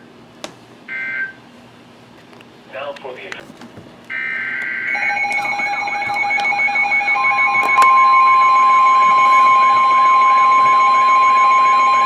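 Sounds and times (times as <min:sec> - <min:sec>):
loud steady warning tone: 0:04.1 - 0:12.0
steady beeping: 0:04.1 - 0:12.0
warbling siren-like tone: 0:04.7 - 0:12.0.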